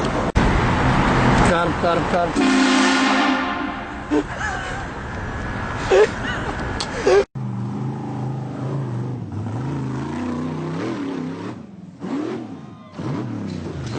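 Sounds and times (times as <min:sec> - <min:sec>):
train horn blaring: 0:02.4 - 0:04.0.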